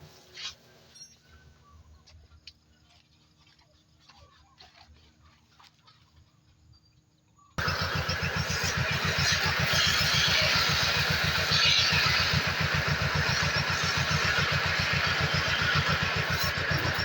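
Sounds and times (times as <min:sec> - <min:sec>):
motorcycle engine running loudly: 0:07.6 - 0:17.0.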